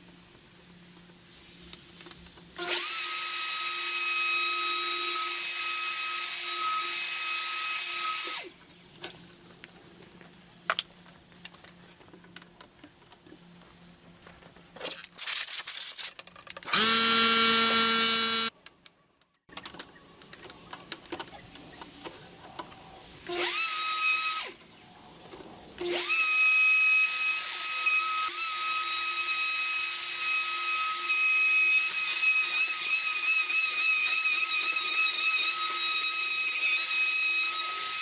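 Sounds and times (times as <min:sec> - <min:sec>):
router motor whining: 0:02.6 - 0:08.8, 0:16.6 - 0:18.5.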